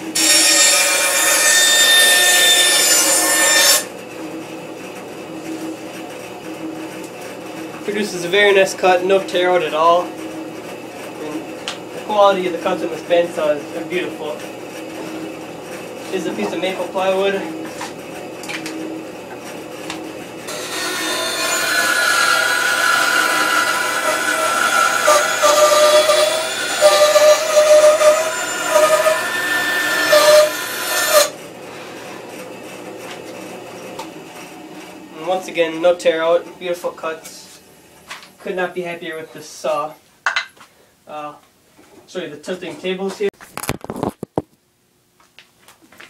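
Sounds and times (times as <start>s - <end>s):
bandsaw cutting plywood: 0.0s - 3.9s, 19.9s - 32.6s
bandsaw humming: 0.0s - 37.6s.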